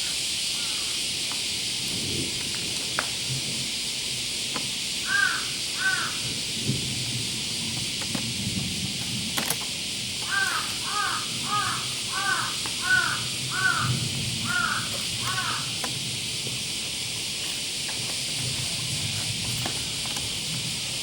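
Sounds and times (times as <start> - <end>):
bird cawing: 0.0 - 1.1, 5.0 - 6.4, 10.2 - 16.0
steady hiss: 0.0 - 21.0.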